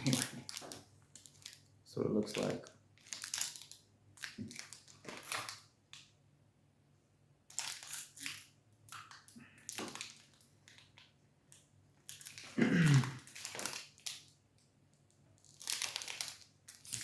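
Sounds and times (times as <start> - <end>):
plastic wrapper crackling: 0.0 - 6.1, 7.5 - 17.0.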